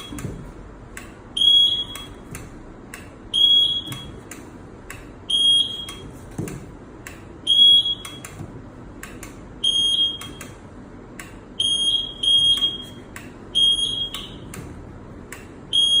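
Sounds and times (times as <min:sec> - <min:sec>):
high-pitched buzzer beeps: 0:01.4 - 0:02.2, 0:03.3 - 0:04.2, 0:05.3 - 0:06.1, 0:07.5 - 0:08.2, 0:09.6 - 0:10.6, 0:11.6 - 0:14.5, 0:15.7 - 0:16.0.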